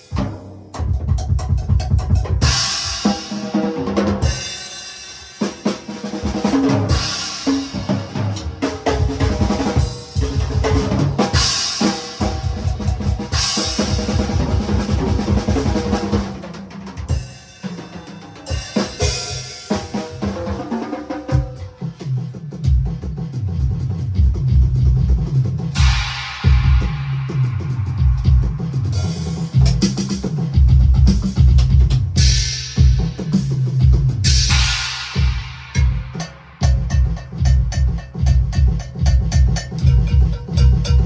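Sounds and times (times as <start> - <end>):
bass drum beats: 0.0 - 4.6, 6.0 - 17.4, 21.3 - 41.0
cymbal crashes: 6.8 - 16.4, 25.8 - 30.1, 32.2 - 41.0.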